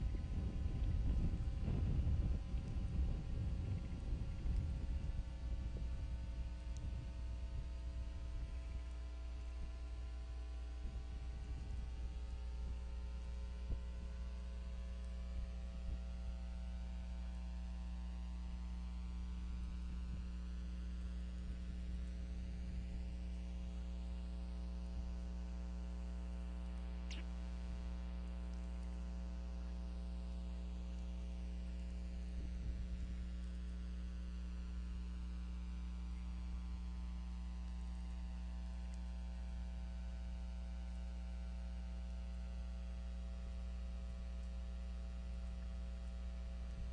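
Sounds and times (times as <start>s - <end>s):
electrical mains hum: 0.0s - 46.9s
faint click: 26.9s - 27.4s.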